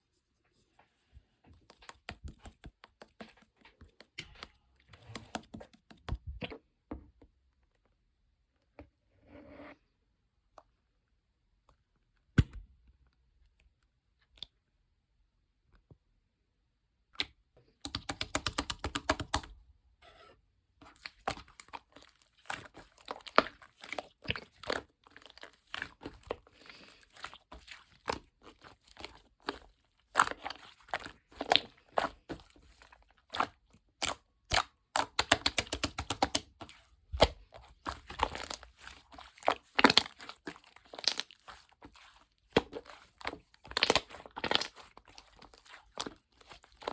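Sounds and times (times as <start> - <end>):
slime crackling and popping: 33.3 - 46.9.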